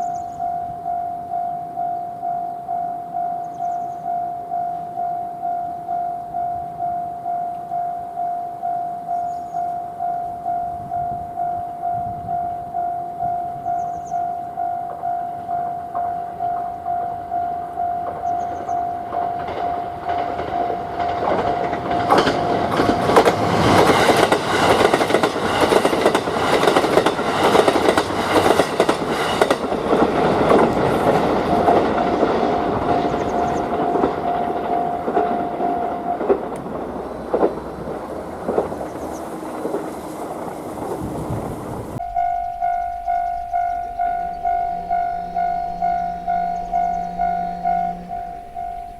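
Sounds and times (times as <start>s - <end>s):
train wheels clattering: 18.1s - 41.1s, 42.0s - 48.9s
level crossing bell clanging: 42.0s - 48.9s.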